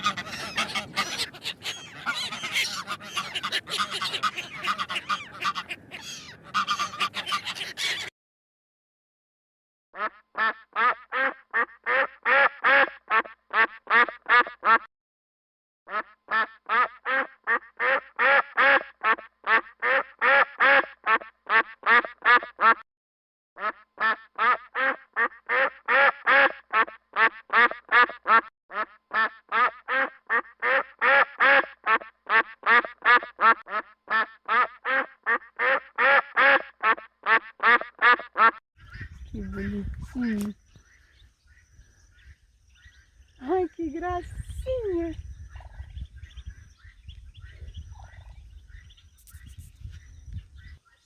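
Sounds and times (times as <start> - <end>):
duck quacking rapidly: 0.0 - 8.1, 10.0 - 14.9, 15.9 - 22.8, 23.6 - 40.4.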